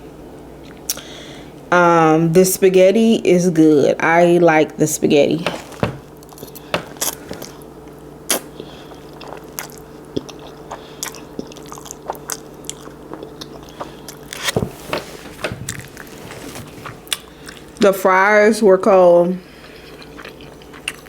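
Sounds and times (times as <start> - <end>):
steady low hum: 0.0 - 21.0
person chewing food: 5.6 - 7.7, 8.3 - 17.8, 19.5 - 21.0.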